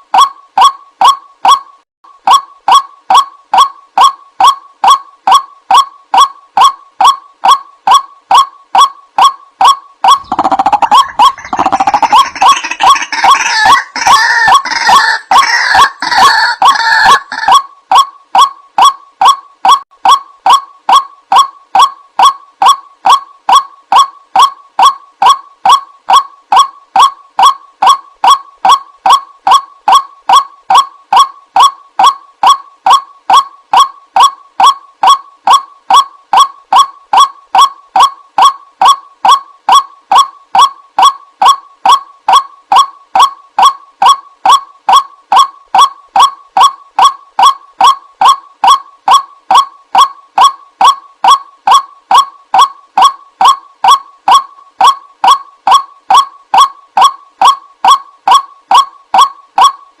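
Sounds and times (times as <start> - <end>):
waterhen honking call: 10.0 - 18.0.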